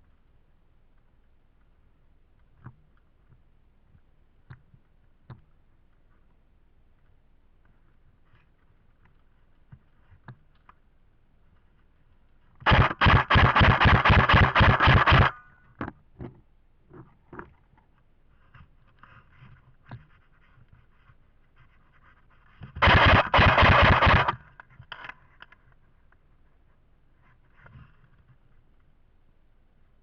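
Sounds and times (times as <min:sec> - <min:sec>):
airsoft rifle full-auto bursts: 0:12.7 - 0:15.4, 0:22.8 - 0:24.4.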